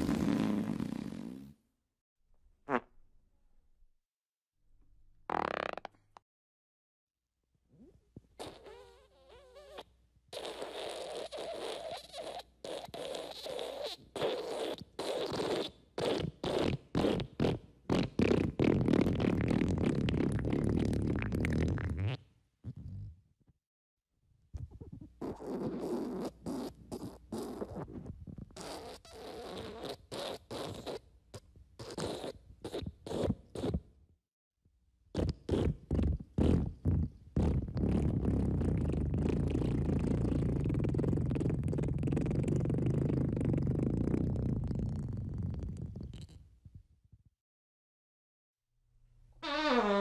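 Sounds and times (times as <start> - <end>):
fart sounds: 0.0 - 1.6, 2.7 - 3.0, 5.3 - 6.0, 7.7 - 23.2, 24.6 - 33.9, 35.2 - 46.5, 49.4 - 50.0.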